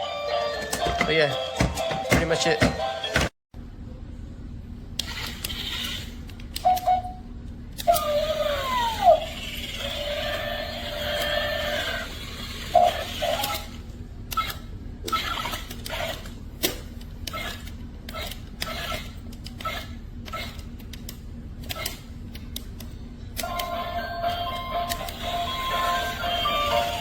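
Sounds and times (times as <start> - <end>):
toy robot clicks and beeps: 5.0 - 7.1, 9.6 - 16.3, 17.3 - 22.0, 23.4 - 27.0
toy robot steady tone: 5.1 - 7.2, 7.8 - 16.2, 17.3 - 20.6, 23.4 - 27.0.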